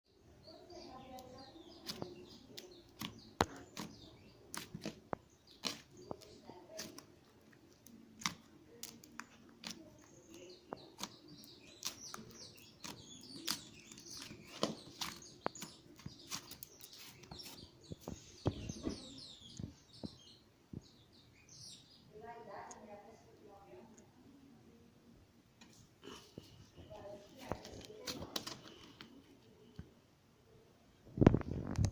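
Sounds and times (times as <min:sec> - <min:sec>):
slime squelching: 0:01.1 - 0:19.8.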